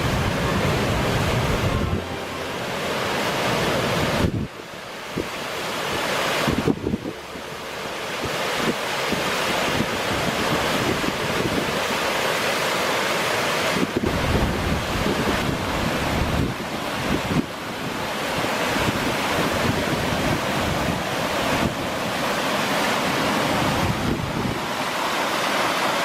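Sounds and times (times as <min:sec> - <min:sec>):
wind buffeting microphone: 0:00.0 - 0:02.2, 0:13.7 - 0:22.2, 0:23.2 - 0:24.8.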